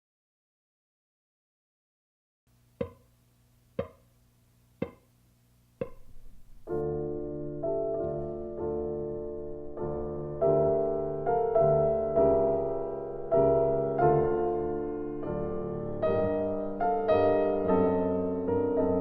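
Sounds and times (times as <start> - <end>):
sharp ringing knocks: 2.8 - 3.0, 3.8 - 4.0
soft piano music: 5.8 - 19.0.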